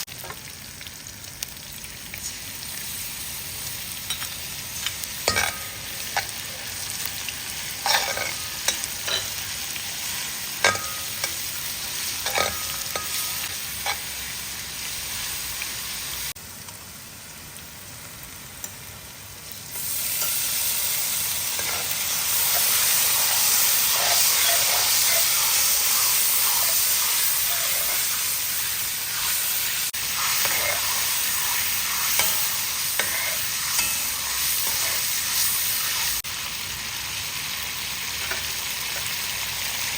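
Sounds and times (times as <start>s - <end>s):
hot oil sizzling in a pan: 0.0s - 39.9s
metal utensil tapping and scraping: 5.2s - 6.4s, 7.8s - 9.4s, 10.6s - 11.4s, 12.2s - 14.1s, 21.6s - 23.3s, 31.5s - 34.0s, 38.2s - 39.1s.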